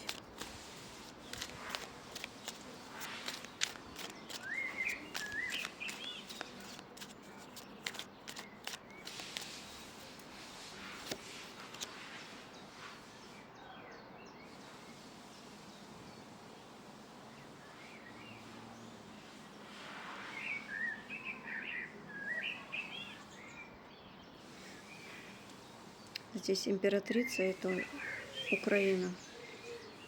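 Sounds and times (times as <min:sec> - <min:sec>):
small bird chirping: 0:00.0 - 0:10.2, 0:20.2 - 0:30.0
outdoor background hiss: 0:00.0 - 0:30.0.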